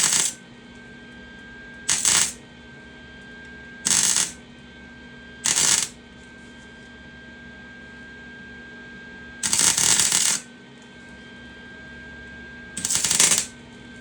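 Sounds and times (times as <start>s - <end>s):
crackling welding arc: 0.0s - 0.4s, 1.9s - 2.4s, 3.9s - 4.4s, 5.4s - 6.0s, 9.4s - 10.4s, 12.8s - 13.5s
welder humming: 0.0s - 0.4s, 1.9s - 2.4s, 3.8s - 4.4s, 5.4s - 6.0s, 9.4s - 10.5s, 12.8s - 13.6s.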